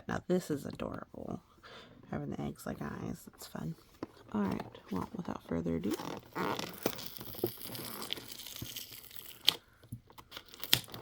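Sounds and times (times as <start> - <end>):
packaging tearing and crinkling: 5.8 - 11.0.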